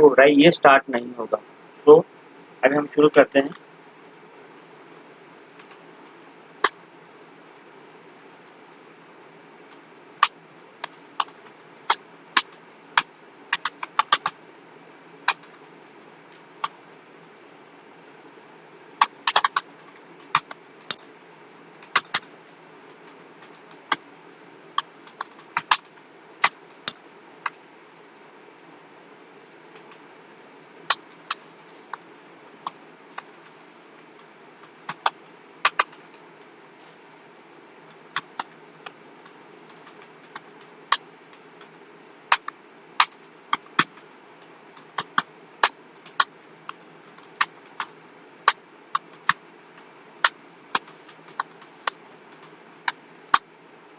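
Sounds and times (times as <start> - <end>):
steady background hiss: 0.0 - 53.9
computer keyboard keys clicking: 19.3 - 19.7, 21.9 - 22.2.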